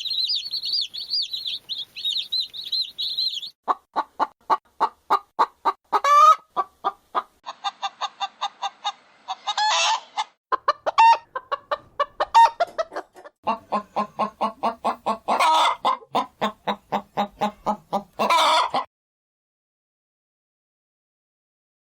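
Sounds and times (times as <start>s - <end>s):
chickens clucking: 0.0s - 18.9s
chicken squawks: 5.9s - 11.3s, 12.2s - 18.9s.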